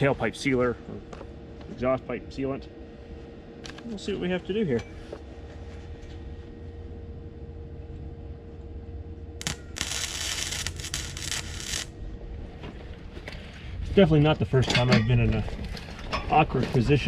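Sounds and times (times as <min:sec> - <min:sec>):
welding arc crackling: 0:09.4 - 0:12.0.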